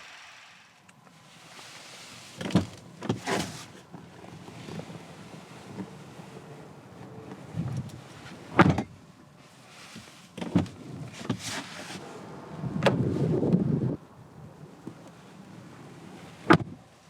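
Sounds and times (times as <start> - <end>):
rough rustling noise: 1.0 - 17.0
car interior fittings knocking: 8.6 - 8.9.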